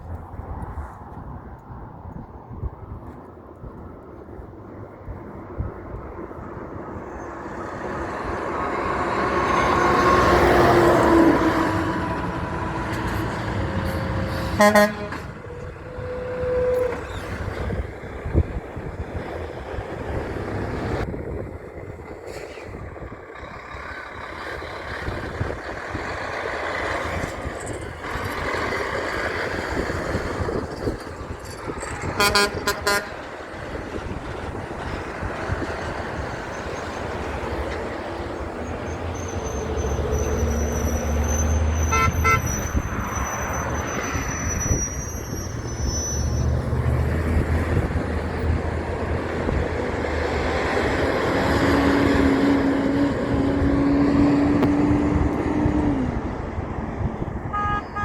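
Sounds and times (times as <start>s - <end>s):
trucks passing: 0.0s - 58.0s
truck horn blasts: 14.3s - 17.1s, 32.1s - 33.4s, 41.8s - 43.0s, 57.5s - 58.0s.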